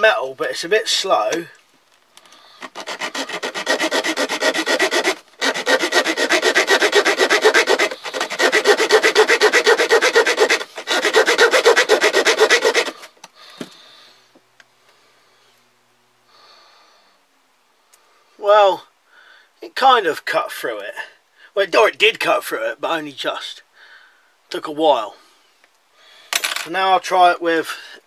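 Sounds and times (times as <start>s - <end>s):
saw blade rasping through wire: 2.6s - 13.1s.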